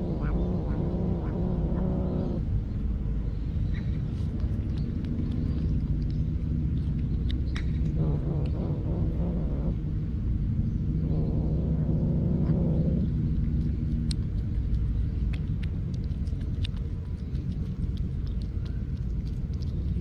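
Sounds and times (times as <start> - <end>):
cat growling: 0.0 - 2.4, 7.9 - 9.8, 10.9 - 14.8
steady low rumble: 0.0 - 20.0.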